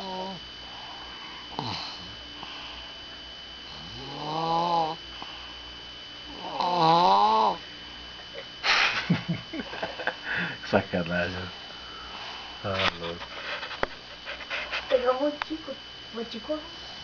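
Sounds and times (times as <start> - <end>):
person snoring: 0.0 - 0.4, 1.5 - 2.5, 3.7 - 5.0, 6.3 - 7.6
rough noisy breath: 10.2 - 10.6.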